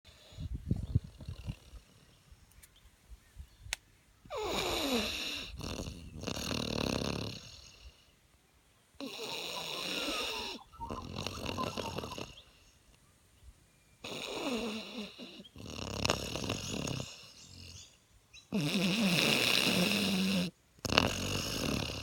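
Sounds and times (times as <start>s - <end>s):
puppy snoring: 4.3s - 8.0s, 9.0s - 12.6s, 14.0s - 17.9s, 18.5s - 22.0s.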